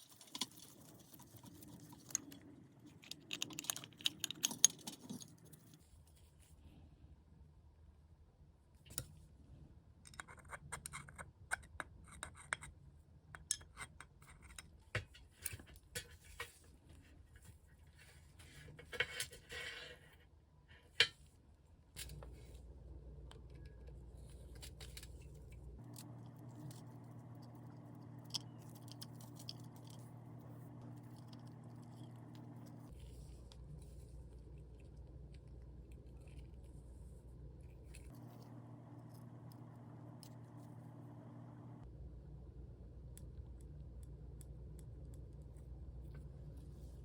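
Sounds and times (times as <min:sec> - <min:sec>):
steady low hum: 0:21.9 - 0:47.0.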